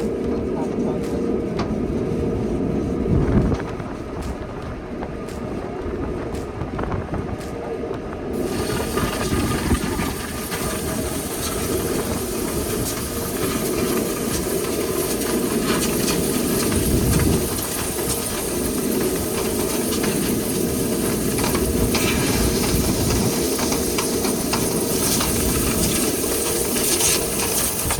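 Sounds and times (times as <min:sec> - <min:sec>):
machine rumble: 0:00.0 - 0:27.9
compressed air hissing: 0:08.4 - 0:27.9.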